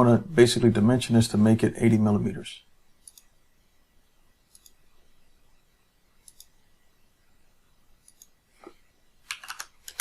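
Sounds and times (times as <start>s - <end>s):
computer mouse clicks: 3.0s - 3.4s, 4.5s - 4.8s, 6.2s - 6.6s, 8.0s - 8.4s, 9.3s - 10.0s.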